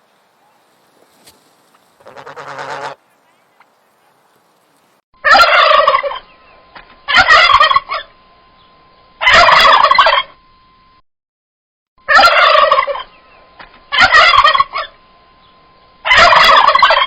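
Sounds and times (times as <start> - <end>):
turkey gobbling: 0.4 - 4.2, 5.2 - 6.3, 7.1 - 8.2, 9.2 - 10.4, 12.1 - 13.2, 13.9 - 15.0, 16.0 - 17.0.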